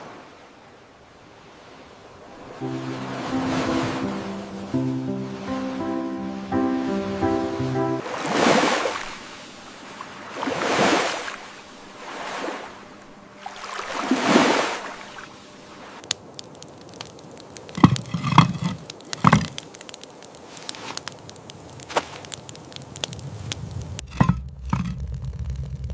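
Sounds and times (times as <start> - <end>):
ocean waves washing ashore: 0.0 - 16.0
campfire crackling: 1.7 - 14.0, 14.8 - 25.9
campfire knocks: 17.6 - 19.8.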